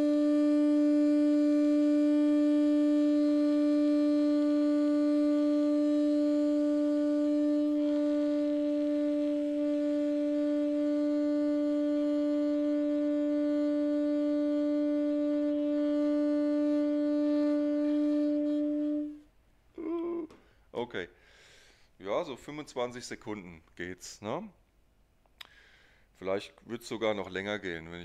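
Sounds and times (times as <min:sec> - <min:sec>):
saxophone long note: 0:00.0 - 0:19.3.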